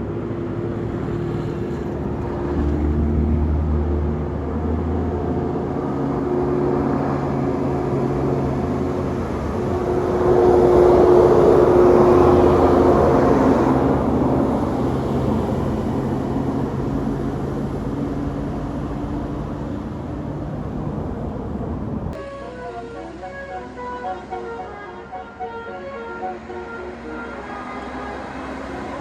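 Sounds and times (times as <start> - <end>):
bus engine rumble: 0.0 - 29.0
melodic bus horn: 8.0 - 15.7, 22.2 - 29.0.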